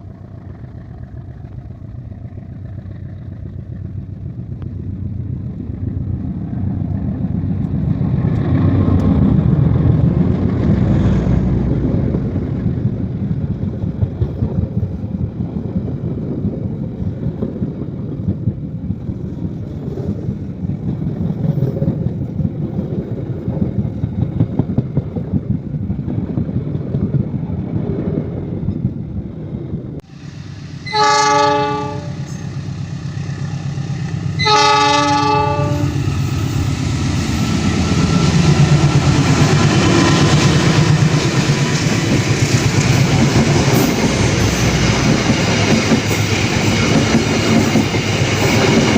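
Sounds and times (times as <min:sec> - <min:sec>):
train rumbling past: 0:00.0 - 0:48.9
locomotive horn blast: 0:30.8 - 0:32.5, 0:34.4 - 0:36.1.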